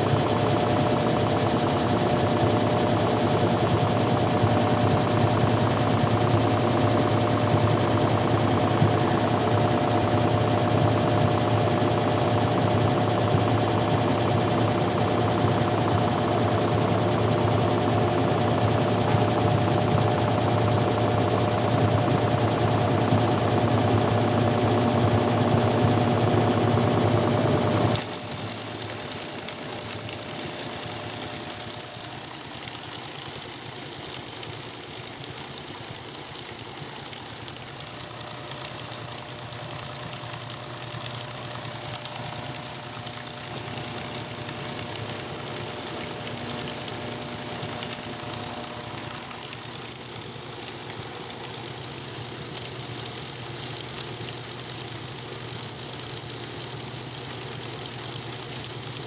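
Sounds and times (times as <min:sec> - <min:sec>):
washing machine humming: 0:00.0 - 0:59.0.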